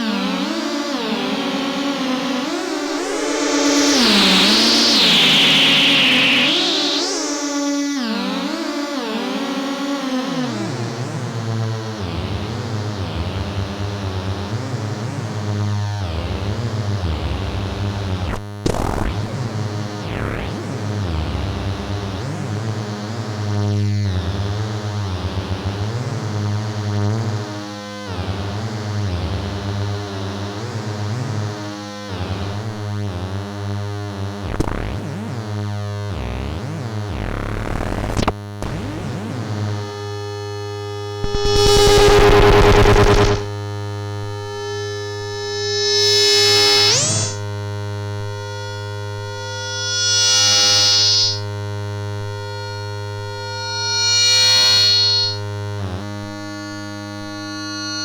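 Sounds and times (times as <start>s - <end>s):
synthesizer notes with echoes: 0.0s - 11.0s, 34.4s - 48.2s
buzzy synth drone: 0.0s - 58.0s.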